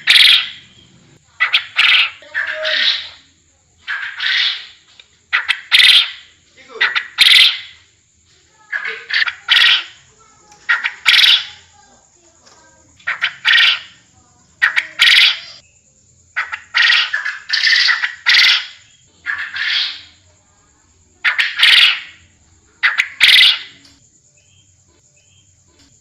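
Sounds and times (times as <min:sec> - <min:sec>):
quail calling: 0:00.0 - 0:07.9, 0:08.6 - 0:11.7, 0:13.0 - 0:14.0, 0:14.6 - 0:15.6, 0:16.4 - 0:20.2, 0:21.2 - 0:24.0.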